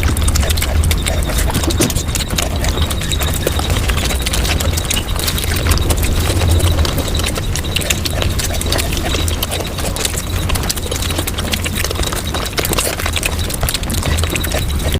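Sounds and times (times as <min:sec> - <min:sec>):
low rumble: 0:00.0 - 0:11.8
sped-up chewing and crunching: 0:00.0 - 0:14.9.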